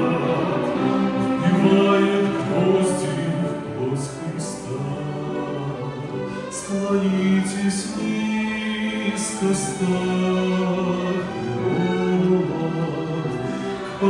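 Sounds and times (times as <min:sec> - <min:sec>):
string orchestra playing slow chords: 0:00.0 - 0:14.0.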